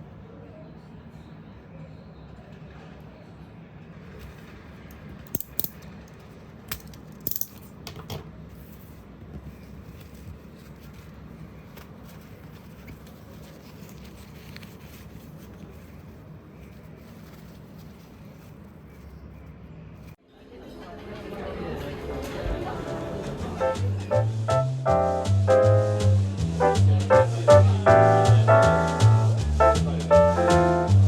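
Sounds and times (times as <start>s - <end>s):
low background hum: 0.0s - 30.9s
small hard objects clinking: 5.3s - 5.8s, 6.7s - 7.8s.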